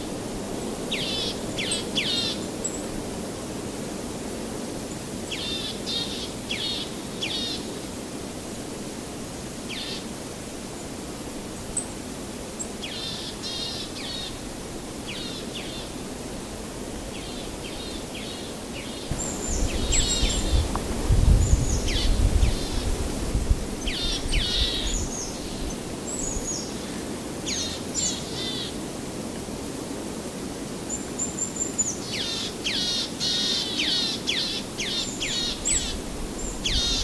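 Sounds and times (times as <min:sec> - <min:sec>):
outdoor background hiss: 0:00.0 - 0:37.0
small birds chirping: 0:17.1 - 0:22.9.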